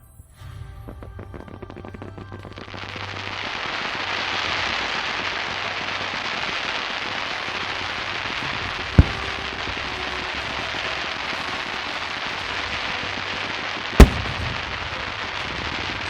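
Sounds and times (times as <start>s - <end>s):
fireworks crackling: 0.5s - 16.0s
loud shell burst boom: 14.0s - 15.0s.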